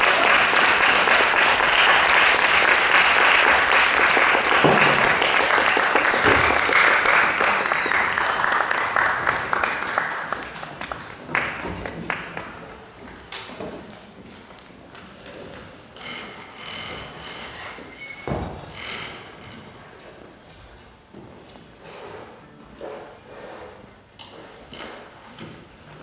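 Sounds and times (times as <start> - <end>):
audience applauding: 0.0 - 13.2.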